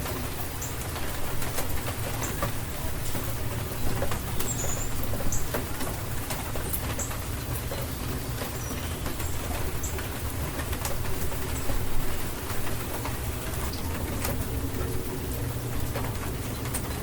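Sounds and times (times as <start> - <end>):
rain drops tapping: 0.0 - 17.0
bird chirping: 4.3 - 5.6.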